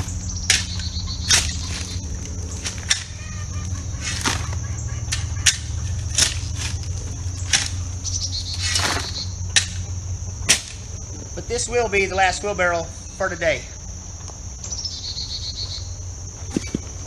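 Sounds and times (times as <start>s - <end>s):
shovel scraping gravel: 0.0s - 9.4s
high insect drone: 0.0s - 17.0s
low hum: 0.0s - 17.0s.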